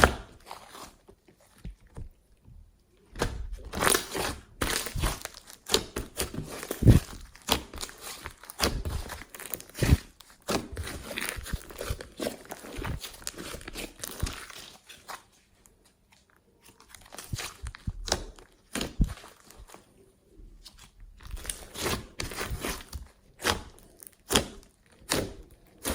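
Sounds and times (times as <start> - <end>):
slime popping and crackling: 3.5 - 14.6.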